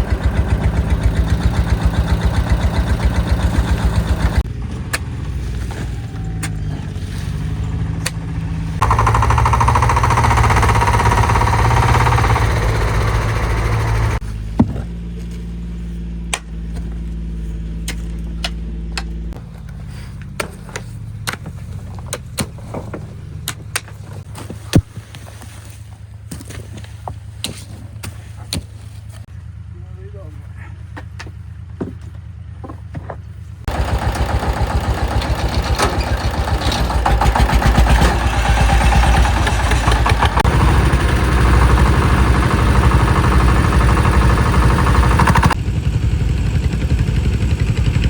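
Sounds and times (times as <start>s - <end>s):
engine running: 0.0s - 24.6s, 28.8s - 48.0s.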